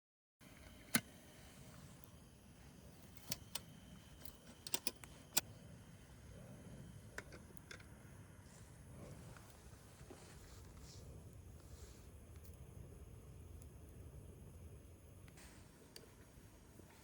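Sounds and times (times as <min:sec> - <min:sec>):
low steady hum: 0:00.4 - 0:17.0
cooking gear clicking and clinking: 0:04.2 - 0:05.4.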